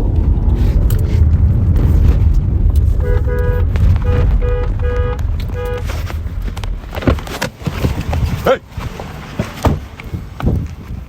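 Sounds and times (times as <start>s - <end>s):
vehicle rumbling: 0.0s - 11.0s
car horn beeping: 2.9s - 6.2s.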